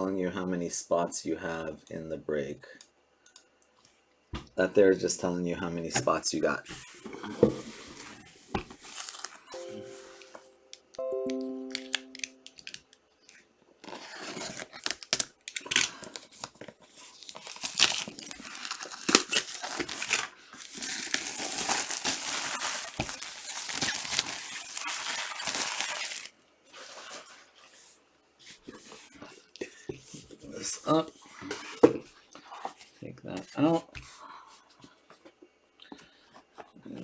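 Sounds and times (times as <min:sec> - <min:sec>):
plastic wrapping tearing and crinkling: 0:07.8 - 0:09.6, 0:11.7 - 0:26.3.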